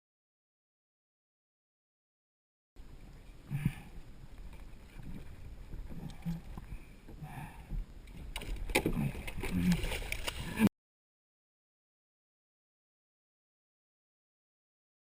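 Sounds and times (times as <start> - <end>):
water splashing against kayak: 2.8 - 10.7.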